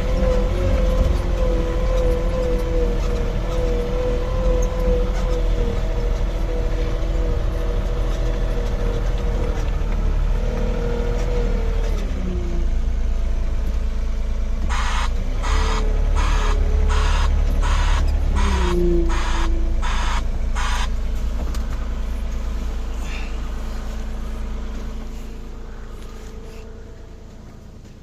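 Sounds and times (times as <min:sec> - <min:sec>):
low machine rumble: 0:00.0 - 0:28.0
regular hissing pulses: 0:14.7 - 0:20.9.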